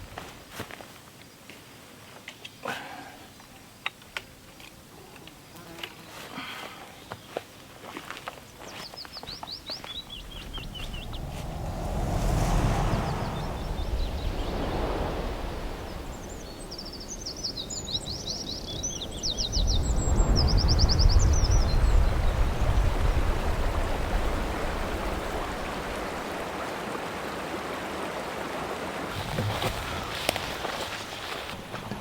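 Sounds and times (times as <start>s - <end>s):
low rushing noise: 9.9s - 26.4s.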